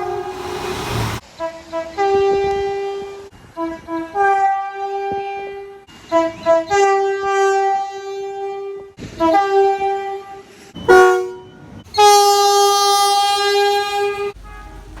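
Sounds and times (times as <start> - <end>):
locomotive air horn blasts: 0.0 - 2.9, 10.8 - 15.0.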